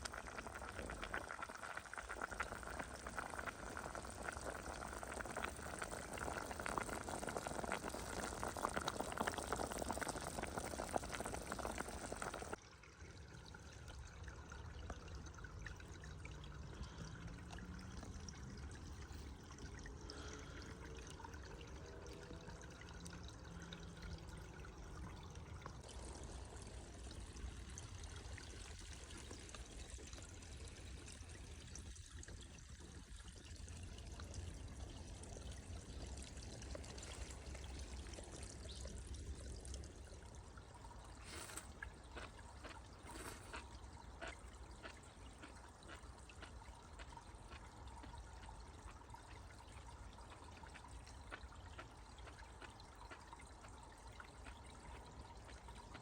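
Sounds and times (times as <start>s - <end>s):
running water: 0.0s - 56.0s.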